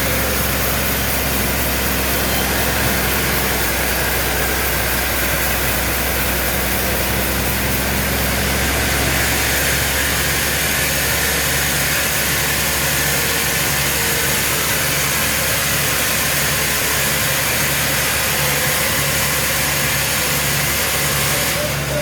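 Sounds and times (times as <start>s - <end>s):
strong even hiss: 0.0s - 13.8s
sawmill machinery drone: 0.0s - 22.0s.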